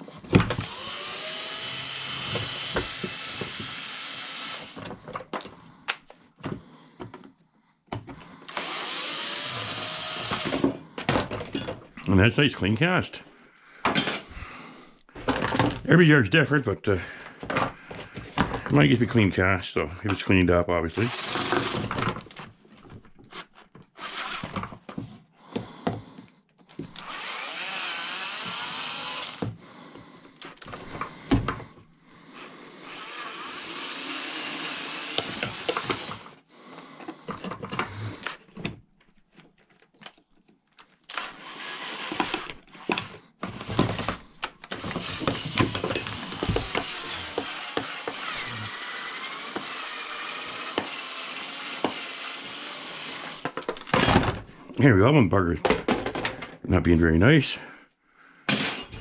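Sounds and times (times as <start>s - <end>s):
power tool whining: 0.2s - 5.0s, 8.4s - 10.8s, 21.0s - 22.4s, 23.3s - 24.8s, 26.8s - 29.6s, 32.3s - 36.4s, 41.1s - 54.0s.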